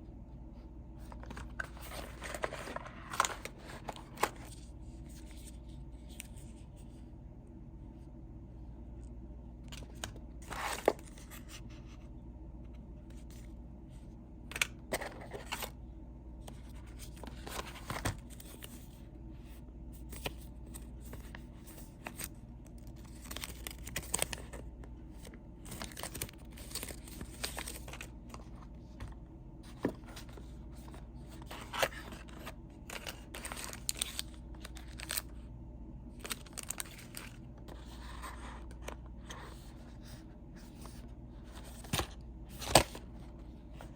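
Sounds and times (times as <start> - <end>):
low steady hum: 0.0 - 43.9
cardboard and plastic rustling: 1.0 - 6.6, 9.7 - 11.9, 14.6 - 15.8, 16.5 - 19.0, 20.0 - 35.4, 36.1 - 43.9.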